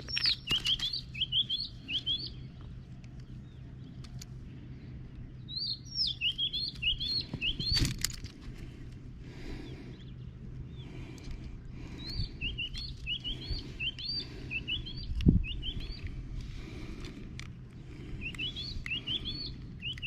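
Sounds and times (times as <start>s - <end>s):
songbird singing: 0.0s - 20.0s
sharp clicks: 15.0s - 20.0s.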